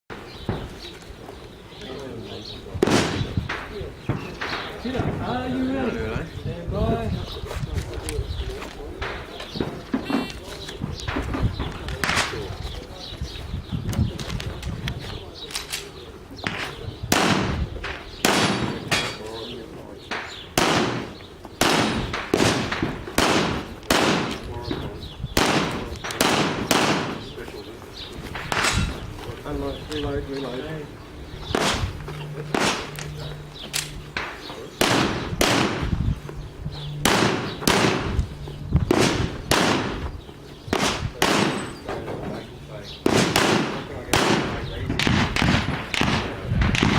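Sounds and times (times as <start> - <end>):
loud pistol shot: 2.8 - 5.2, 16.4 - 19.1, 20.6 - 24.5, 25.4 - 27.3, 31.5 - 33.0, 34.2 - 35.9, 37.0 - 38.2, 38.9 - 40.1, 40.7 - 41.8, 43.0 - 46.9.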